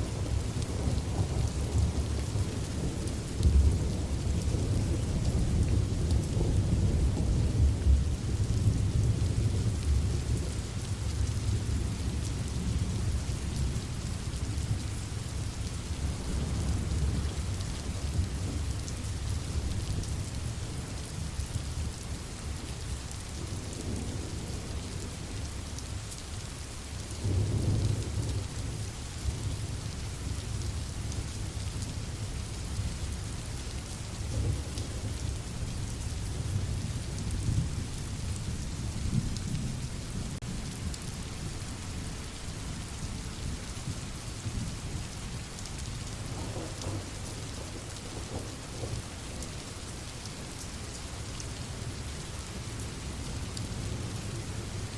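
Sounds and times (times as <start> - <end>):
steady rain: 0.0 - 54.9
low rolling thunder: 0.1 - 14.8, 45.8 - 49.7.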